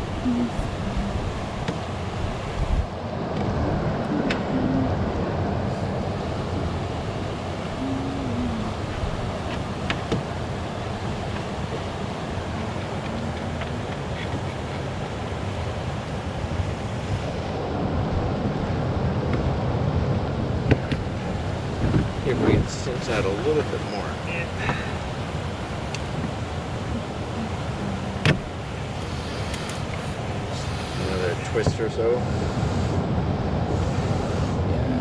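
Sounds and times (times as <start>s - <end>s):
river water rushing: 0.0s - 35.0s
wind rushing: 0.0s - 35.0s.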